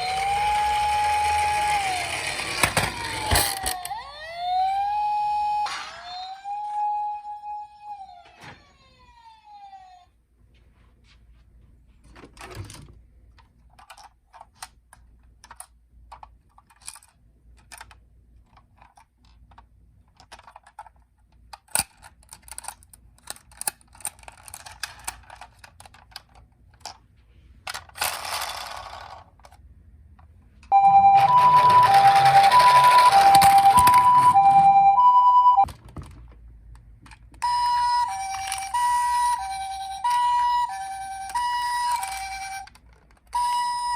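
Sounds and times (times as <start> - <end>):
toy cars clicking and rattling: 0.0 - 4.2, 13.3 - 27.0, 27.6 - 29.7, 31.0 - 34.5, 35.7 - 43.9
toy two-tone siren: 0.0 - 10.1, 30.7 - 35.7, 37.4 - 43.9.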